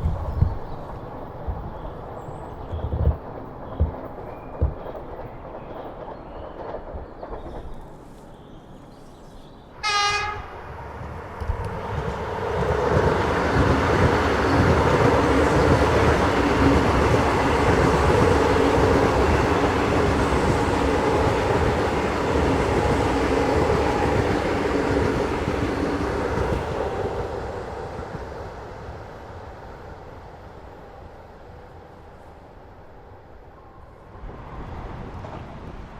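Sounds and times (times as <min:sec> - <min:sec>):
train running past: 0:00.0 - 0:35.9
train horn blast: 0:09.8 - 0:10.8.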